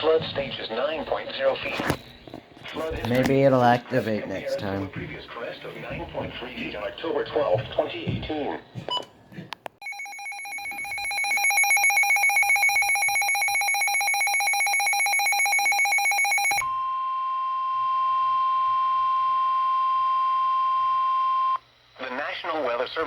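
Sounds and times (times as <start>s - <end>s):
rapidly pulsing alarm beep: 9.8s - 16.6s
steady warning alarm tone: 9.8s - 21.6s.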